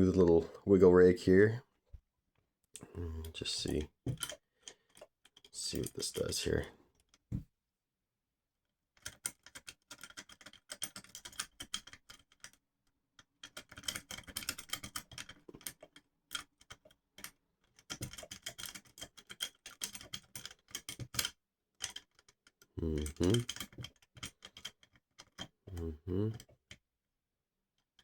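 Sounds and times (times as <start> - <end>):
lock pick rapid clicking: 9.0 - 12.6, 13.4 - 22.2.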